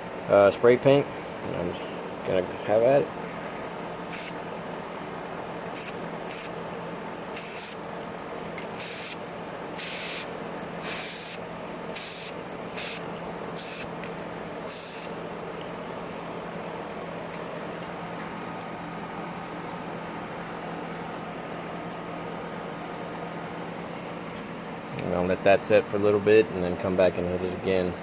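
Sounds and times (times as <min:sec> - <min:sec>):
spray paint can hissing: 0:04.1 - 0:04.4, 0:05.8 - 0:06.6, 0:07.3 - 0:07.8, 0:08.6 - 0:09.2, 0:09.8 - 0:14.0, 0:14.7 - 0:15.2.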